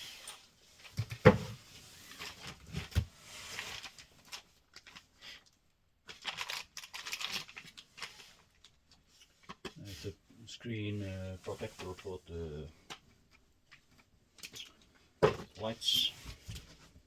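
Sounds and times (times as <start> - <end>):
plastic packaging rustling: 0.0 - 9.9
items knocking when set down: 1.0 - 1.6, 15.2 - 15.6.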